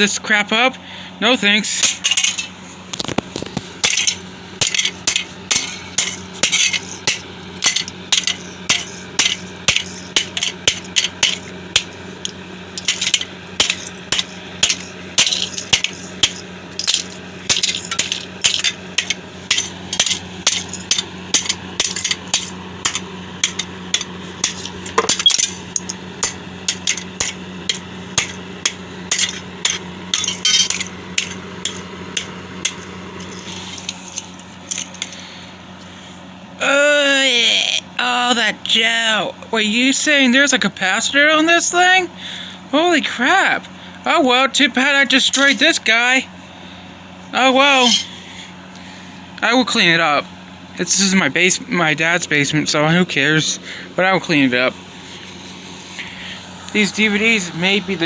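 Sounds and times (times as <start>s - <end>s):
metal and plastic parts rattling: 1.8s - 35.2s
tool smashing computer hardware: 3.8s - 35.2s.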